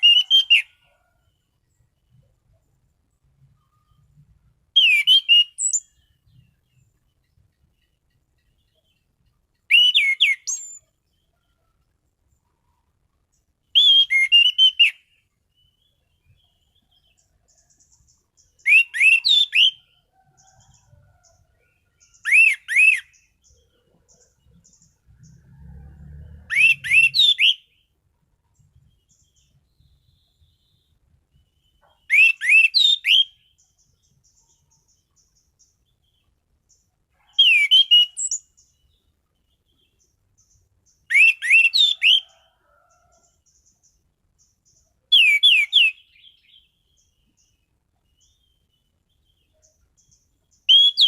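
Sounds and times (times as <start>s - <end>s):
thrush singing whistled notes: 0.0s - 1.0s, 3.6s - 6.6s, 9.6s - 10.9s, 13.6s - 15.2s, 17.6s - 20.9s, 22.0s - 25.4s, 26.3s - 27.9s, 31.8s - 35.2s, 37.3s - 38.7s, 40.4s - 42.4s, 45.1s - 46.7s, 50.6s - 51.0s.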